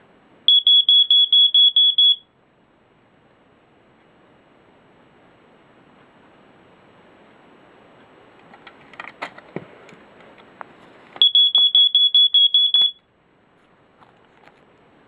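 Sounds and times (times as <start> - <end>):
smoke alarm pulsing beep: 0.5 - 2.3, 11.2 - 13.0.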